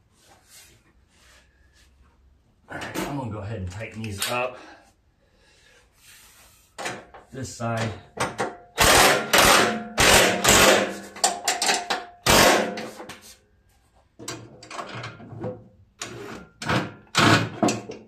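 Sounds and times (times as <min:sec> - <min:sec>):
hand tools clanking on metal: 0:10.5 - 0:12.9.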